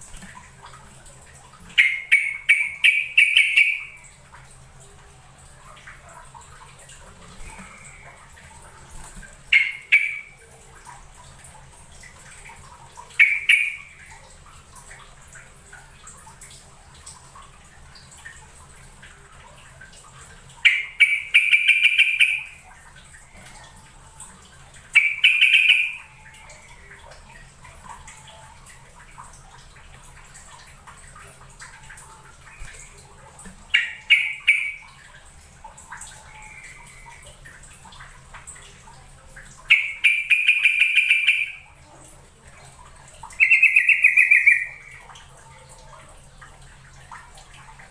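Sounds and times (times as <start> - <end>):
bulbul chattering calls: 43.4 - 44.8.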